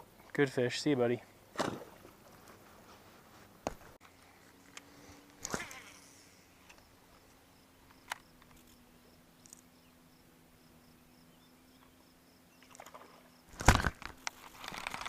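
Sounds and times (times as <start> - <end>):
faint steady hum: 0.0 - 15.0
faint pulsing high chirp: 6.0 - 13.5.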